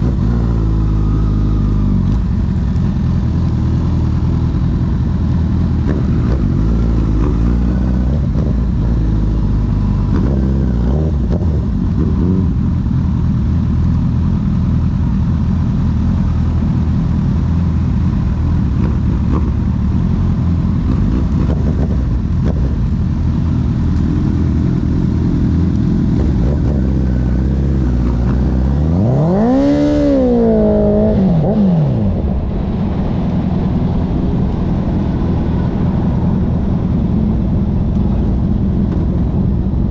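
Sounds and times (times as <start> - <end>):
motorcycle engine running: 0.0 - 39.9
wind noise: 28.8 - 39.9.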